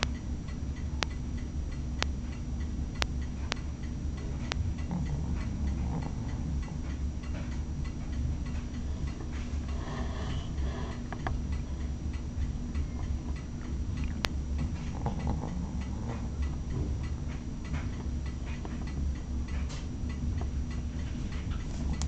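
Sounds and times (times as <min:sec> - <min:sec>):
faint ticking clicks: 0:00.0 - 0:22.0
steady low hum: 0:00.0 - 0:22.0
dog snoring softly: 0:04.3 - 0:07.5, 0:08.8 - 0:11.4, 0:14.7 - 0:17.1.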